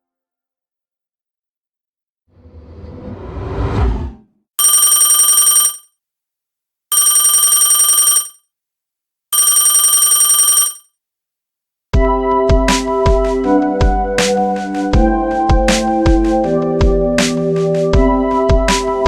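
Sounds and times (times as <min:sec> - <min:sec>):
rising swell: 0:02.4 - 0:04.3
telephone ringing: 0:04.6 - 0:05.9, 0:06.9 - 0:08.4, 0:09.4 - 0:10.9.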